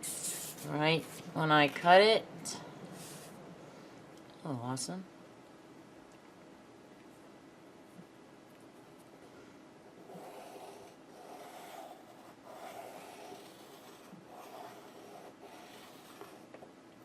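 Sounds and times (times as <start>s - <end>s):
pencil scratching on plastic: 10.0s - 16.6s.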